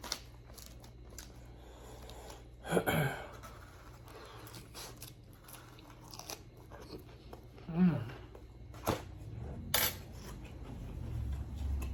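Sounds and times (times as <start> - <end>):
person humming low: 7.6 - 8.2.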